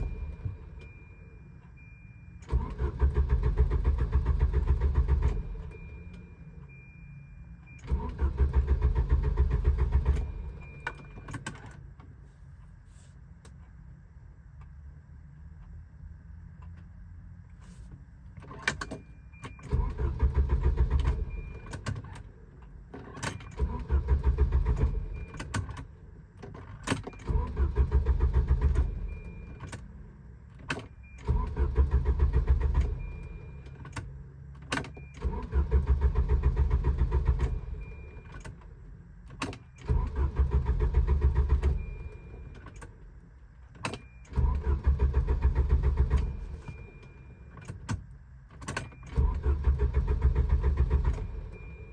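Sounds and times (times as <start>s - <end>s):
starter cranking engine: 2.5s - 5.6s, 7.8s - 10.5s, 19.7s - 21.8s, 23.1s - 25.2s, 27.2s - 29.1s, 31.2s - 33.1s, 35.2s - 37.8s, 39.8s - 42.4s, 44.3s - 46.7s, 49.1s - 51.8s.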